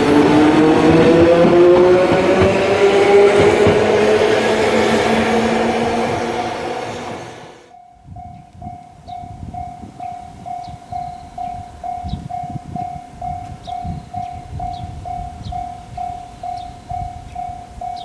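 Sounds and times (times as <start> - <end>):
level crossing warning bell: 7.7 - 18.0.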